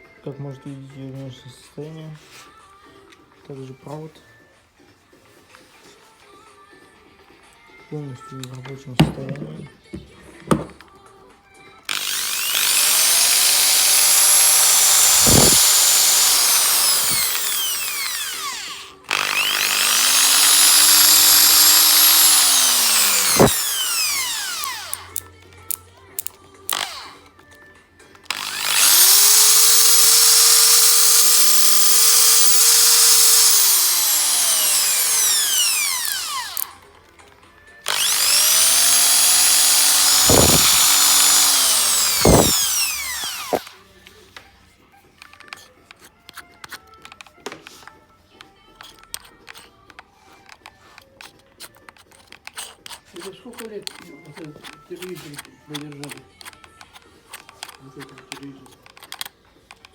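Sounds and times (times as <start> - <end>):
electric drill whining: 11.9 - 25.8, 26.7 - 27.5, 28.3 - 36.9, 37.8 - 43.9.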